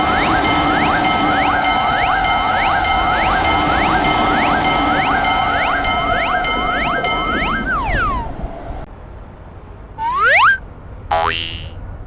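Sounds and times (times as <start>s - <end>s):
electronic crossing warning bell: 0.0s - 8.7s
rising electronic sweeps: 0.0s - 8.8s, 10.0s - 11.7s.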